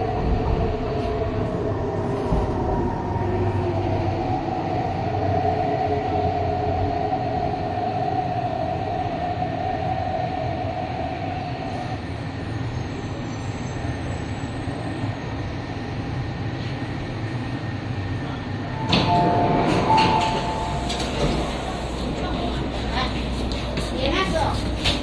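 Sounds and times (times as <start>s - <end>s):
train wheels rumbling: 18.2s - 25.0s
two-tone electronic chime: 18.8s - 21.8s.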